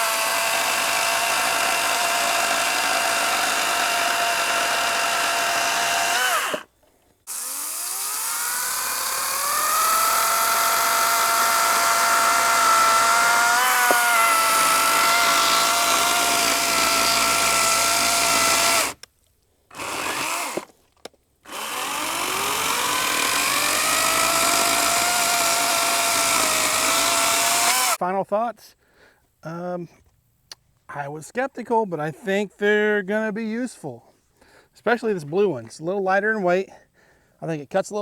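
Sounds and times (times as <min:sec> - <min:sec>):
electric chainsaw cutting log: 0:00.0 - 0:06.7, 0:07.3 - 0:19.0, 0:19.7 - 0:20.7, 0:21.5 - 0:28.0.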